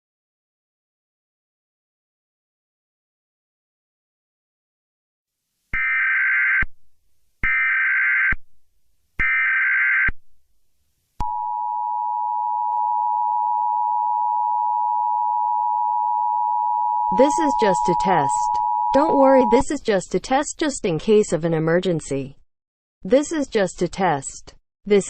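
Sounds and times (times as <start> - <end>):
two-tone attention signal: 11.2 - 19.7
warbling data tone bursts: 12.9 - 19.8.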